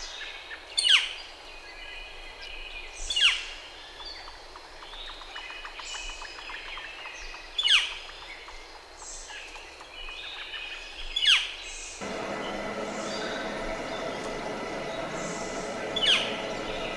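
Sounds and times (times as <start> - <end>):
birds singing faintly: 12.0 - 16.9.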